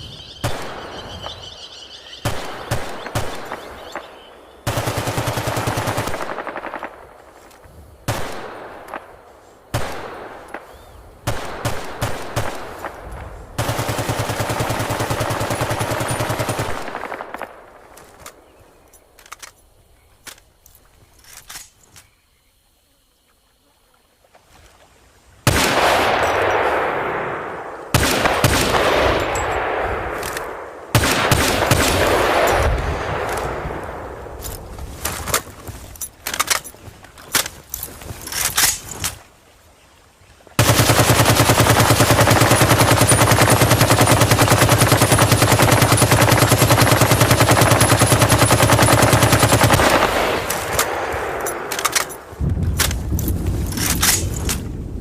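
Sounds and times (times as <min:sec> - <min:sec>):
machine gun firing: 0:04.7 - 0:06.8, 0:13.6 - 0:17.4, 0:40.6 - 0:52.2.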